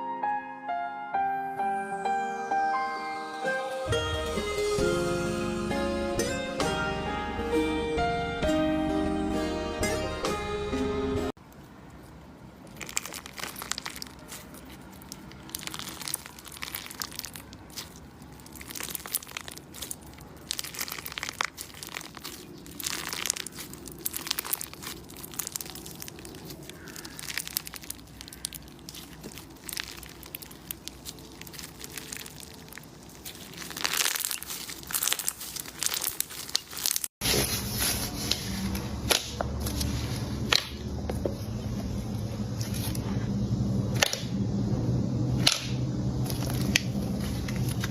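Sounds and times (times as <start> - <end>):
slime crackling and popping: 12.6 - 37.1.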